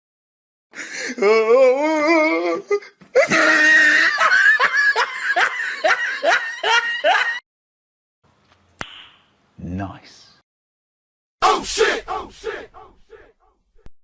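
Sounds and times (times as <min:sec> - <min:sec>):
laugh in rising bursts: 0:03.4 - 0:07.4.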